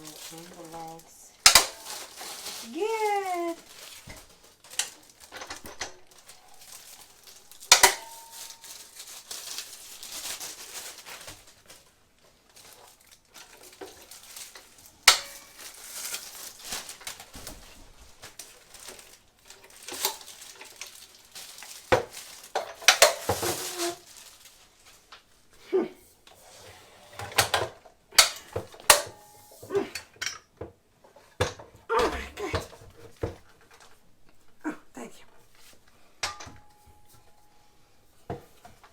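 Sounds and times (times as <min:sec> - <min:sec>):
metallic clanks and knocks: 0:36.2 - 0:36.8.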